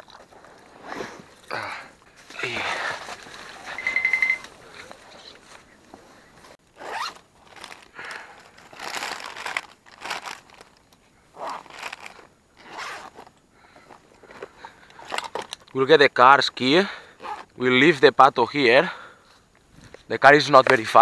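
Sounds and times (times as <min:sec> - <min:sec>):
zipper rasping: 0:00.7 - 0:01.4, 0:06.8 - 0:07.8, 0:11.3 - 0:13.3, 0:17.2 - 0:17.5.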